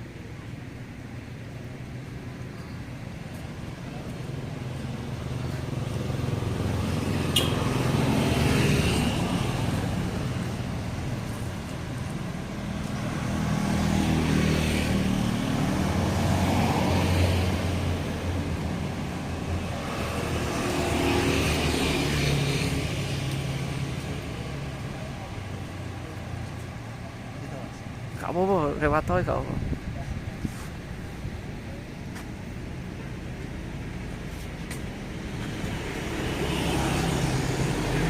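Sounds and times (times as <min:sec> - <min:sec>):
vehicles passing: 0:00.0 - 0:38.0.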